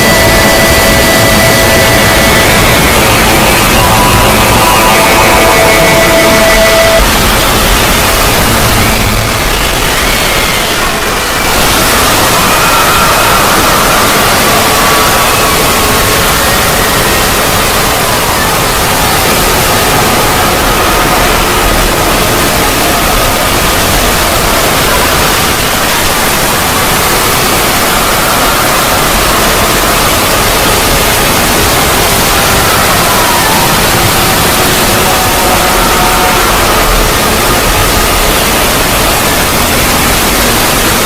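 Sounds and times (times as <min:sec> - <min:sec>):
faint wavering tones: 0:00.0 - 0:11.3.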